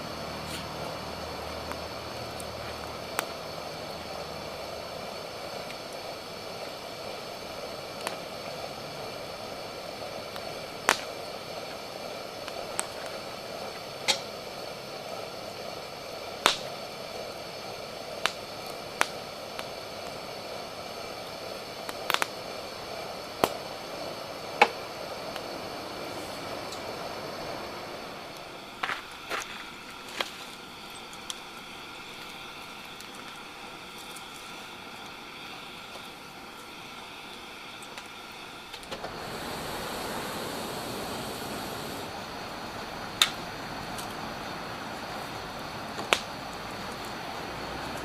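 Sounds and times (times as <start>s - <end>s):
campfire crackling: 0.0s - 48.0s
fire popping and snapping: 0.1s - 48.0s.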